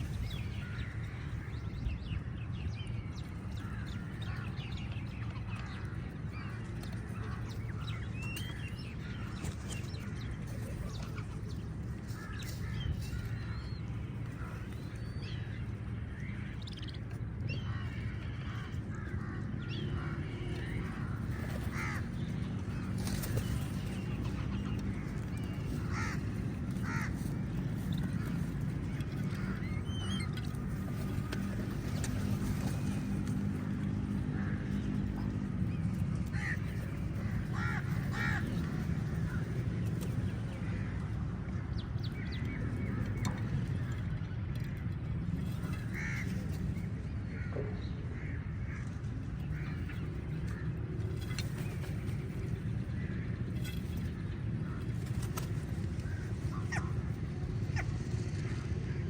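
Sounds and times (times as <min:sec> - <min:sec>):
steady low hum: 0:00.0 - 0:59.0
crows cawing: 0:17.6 - 0:22.9, 0:25.8 - 0:30.3, 0:36.3 - 0:39.5, 0:45.7 - 0:46.4.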